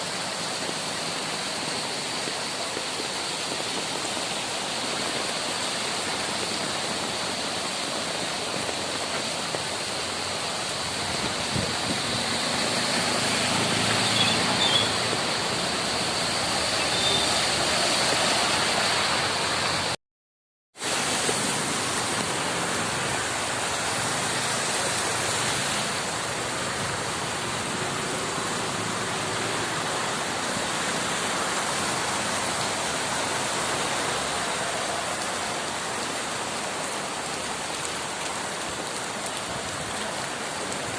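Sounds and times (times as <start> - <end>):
heavy rain: 0.0 - 20.0, 20.7 - 40.9
running water: 0.0 - 20.0.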